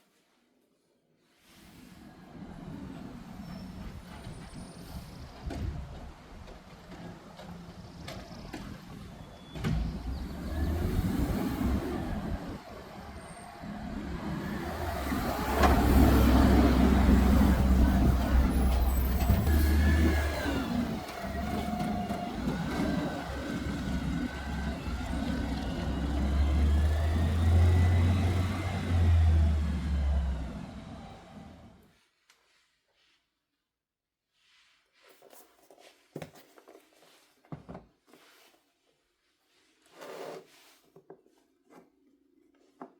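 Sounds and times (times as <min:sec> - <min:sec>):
vehicle engine rumble: 0:02.9 - 0:31.8.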